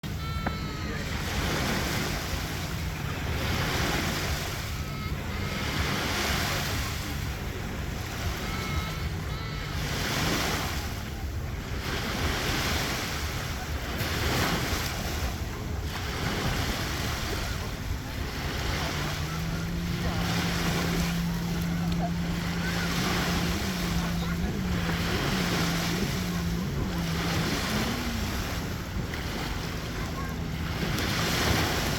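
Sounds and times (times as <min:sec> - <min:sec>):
low steady hum: 0:00.0 - 0:12.0, 0:13.2 - 0:31.9
waves breaking and washing in: 0:00.0 - 0:31.9
wind: 0:00.0 - 0:31.9.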